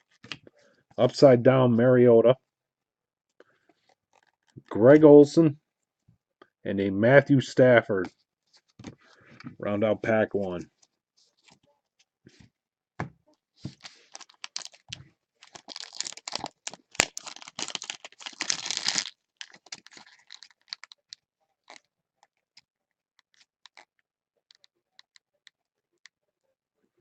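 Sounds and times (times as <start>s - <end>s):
plastic wrapper crinkling and tearing: 3.9s - 4.6s, 13.7s - 21.9s.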